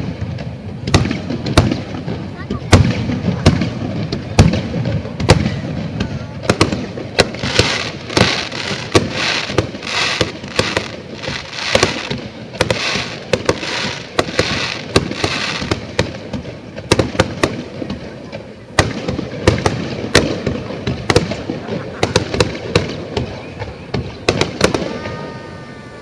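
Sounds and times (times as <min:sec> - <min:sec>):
fireworks bursting: 0:00.0 - 0:26.0
rushing hiss: 0:07.3 - 0:15.8.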